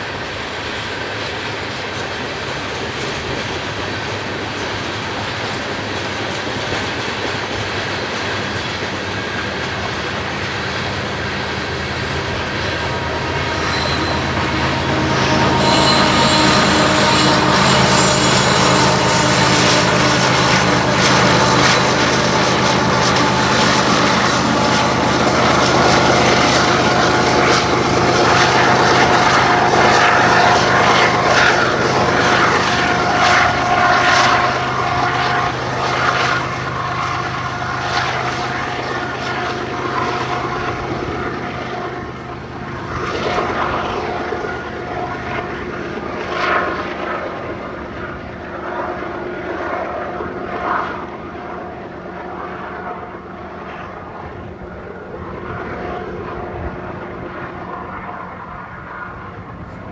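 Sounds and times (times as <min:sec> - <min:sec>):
diesel locomotive engine drone: 0:00.0 - 0:59.9
rolling train cars: 0:00.0 - 0:59.9.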